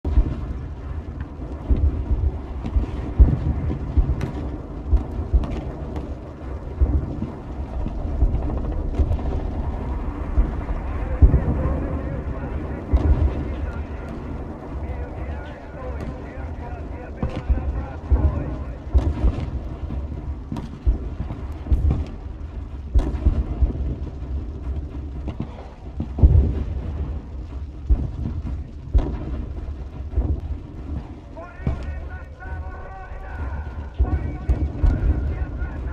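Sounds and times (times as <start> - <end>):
heavy booms: 0.0 - 35.9
rumble of distant explosions: 0.0 - 35.9
scattered gunshots: 10.3 - 22.2, 30.9 - 35.9.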